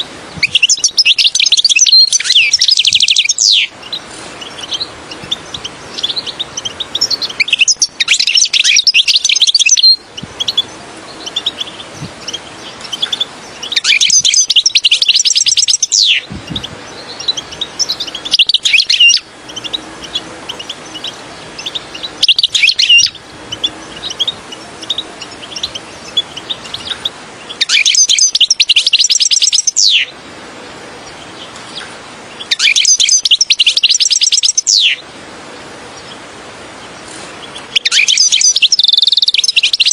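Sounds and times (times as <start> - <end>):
soft bird chirps: 0.0 - 30.1, 31.0 - 39.9
finch twittering song: 0.0 - 30.2, 31.0 - 39.9.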